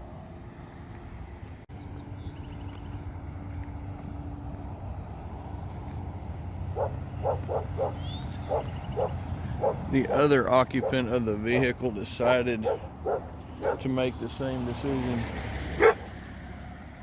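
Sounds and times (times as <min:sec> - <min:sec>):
low outdoor rumble: 0:00.0 - 0:17.0
dog yipping: 0:06.8 - 0:09.8, 0:15.8 - 0:16.0.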